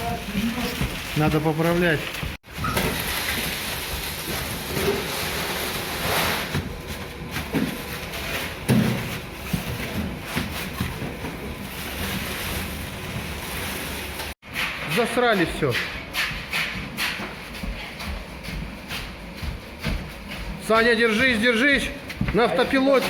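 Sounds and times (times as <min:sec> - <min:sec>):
rushing of poured concrete: 0:00.0 - 0:06.6, 0:09.6 - 0:15.4.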